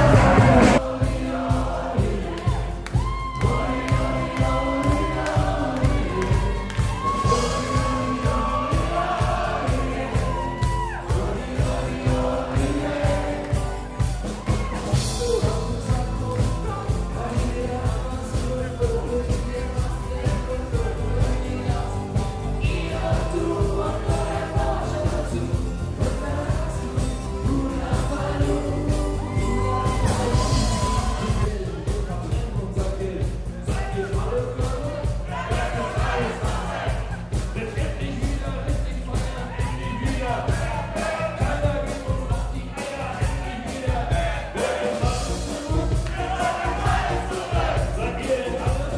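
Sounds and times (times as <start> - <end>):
live dance band playing: 0.0 - 0.9, 6.4 - 48.9
person singing: 0.0 - 14.0, 14.8 - 37.0
steady drum beat: 0.0 - 48.9.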